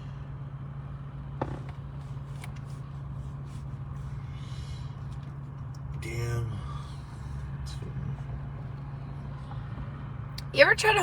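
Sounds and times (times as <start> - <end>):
vehicle low drone: 0.0 - 11.0.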